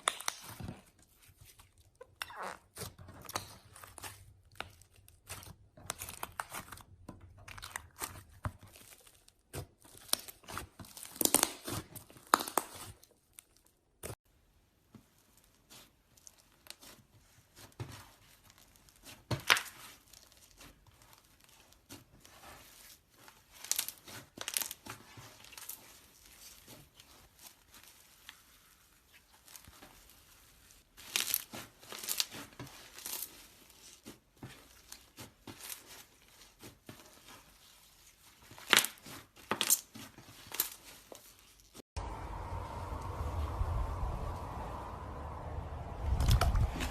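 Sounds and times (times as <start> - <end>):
sticky slime crackling and tearing: 2.7 - 13.7.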